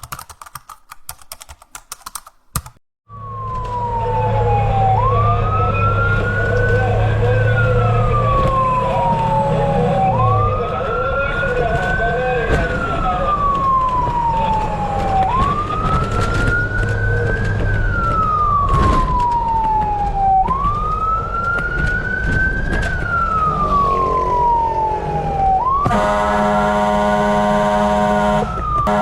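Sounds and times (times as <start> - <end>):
engine and road rumble: 3.1 - 29.0
fire truck siren wailing: 3.1 - 29.0
horn blaring: 25.8 - 29.0.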